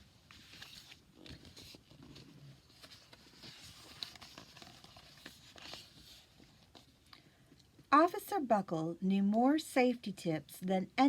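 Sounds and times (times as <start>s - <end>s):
book pages turning: 0.0s - 7.0s
paper rustling: 0.0s - 7.0s.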